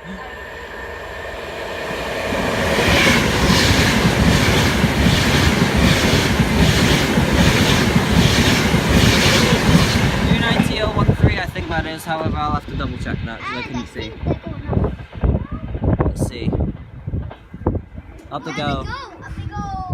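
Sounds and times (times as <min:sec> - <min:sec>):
train passing at speed: 0:00.0 - 0:19.9.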